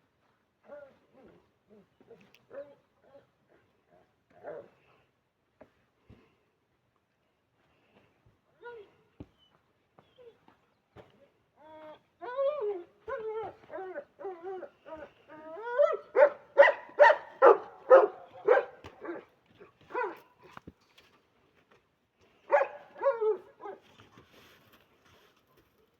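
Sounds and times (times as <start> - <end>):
dog barking: 4.4 - 4.7, 15.8 - 19.3, 19.9 - 20.3, 22.5 - 23.8.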